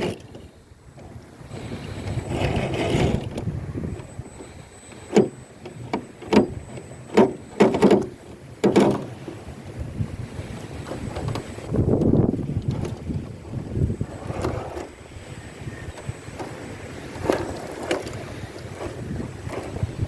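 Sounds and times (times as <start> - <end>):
faint high whine: 0.0 - 20.0
wind noise on microphone: 0.0 - 20.0
rc car knocks and clacks: 2.0 - 4.0, 15.9 - 19.9.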